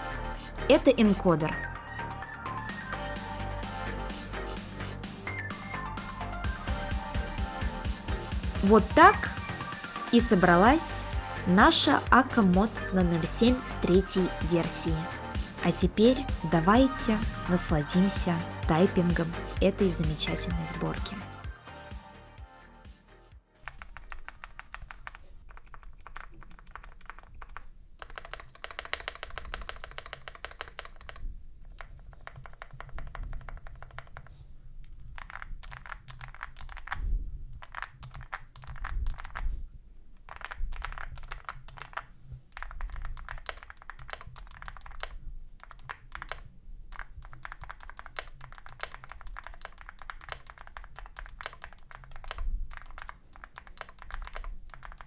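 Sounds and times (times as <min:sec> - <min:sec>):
mechanical keyboard typing: 0:10.1 - 0:21.3, 0:23.6 - 0:34.3, 0:34.9 - 0:37.0, 0:37.6 - 0:39.5, 0:40.3 - 0:55.0.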